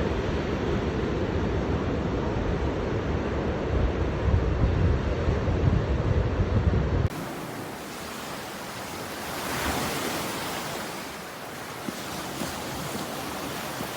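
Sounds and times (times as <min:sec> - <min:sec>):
wind buffeting microphone: 0:00.0 - 0:13.9
ocean surf breaking: 0:07.1 - 0:13.9.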